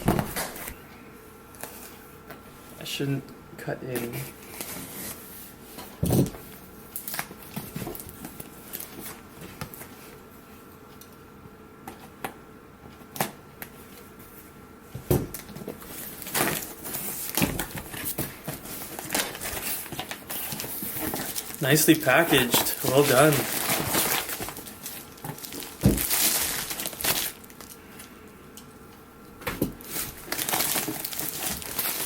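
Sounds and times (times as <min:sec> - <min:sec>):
rustling of packaging: 0:15.3 - 0:28.1, 0:29.7 - 0:32.0.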